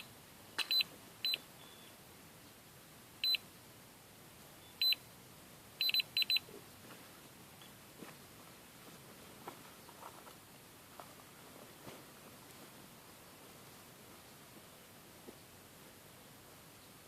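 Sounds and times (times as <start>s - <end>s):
short high electronic beeps: 5.8s - 6.4s.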